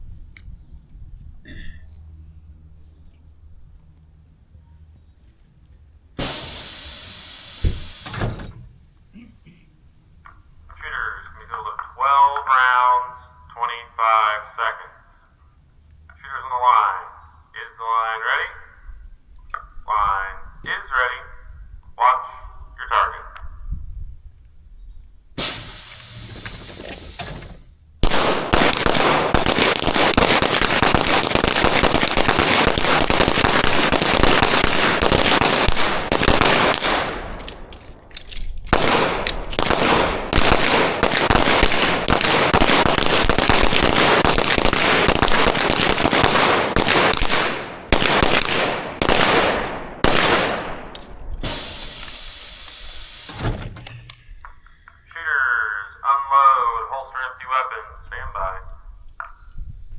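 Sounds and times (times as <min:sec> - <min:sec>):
rapid pistol gunfire: 0:06.2 - 0:08.0, 0:28.0 - 0:38.1, 0:38.7 - 0:53.2.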